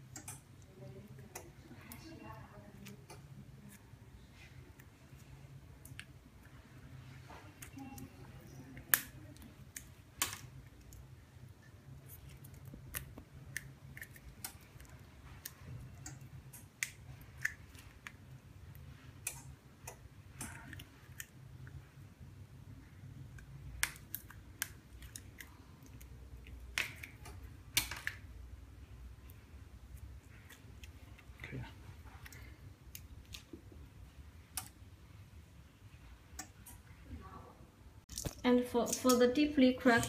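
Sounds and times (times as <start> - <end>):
faint low hum: 0.0 - 40.0.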